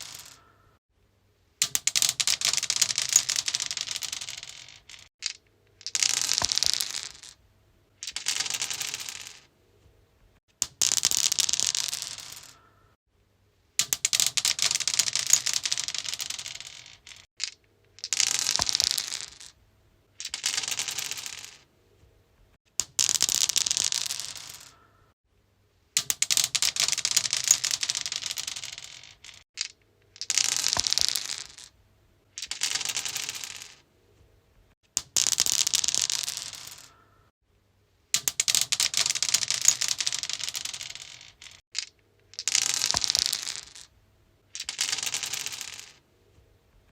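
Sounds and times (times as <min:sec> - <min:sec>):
dice clattering on stone: 0:00.0 - 0:00.5, 0:01.6 - 0:07.4, 0:08.0 - 0:09.5, 0:10.6 - 0:12.6, 0:13.8 - 0:19.6, 0:20.2 - 0:21.7, 0:22.8 - 0:24.8, 0:26.0 - 0:33.8, 0:35.0 - 0:37.0, 0:38.2 - 0:43.9, 0:44.5 - 0:46.0.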